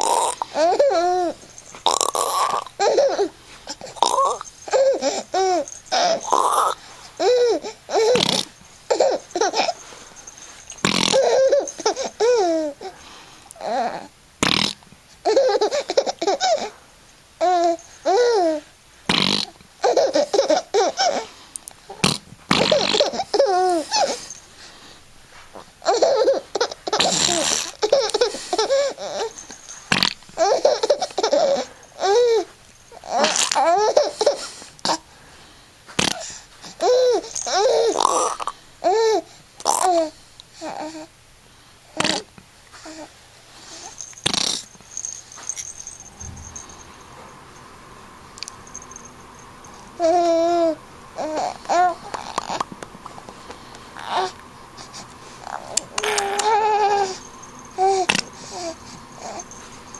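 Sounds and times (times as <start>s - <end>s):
small child laughing: 0.0s - 1.4s, 2.2s - 9.8s, 10.9s - 12.9s, 15.2s - 16.7s, 19.8s - 21.3s, 22.6s - 24.3s, 25.8s - 29.4s, 30.4s - 34.5s, 55.5s - 57.2s.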